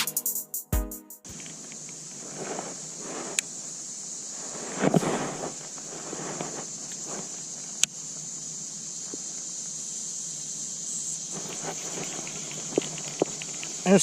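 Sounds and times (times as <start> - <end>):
high-pitched insect drone: 6.6 - 14.0
rustling handling sounds: 11.4 - 14.0.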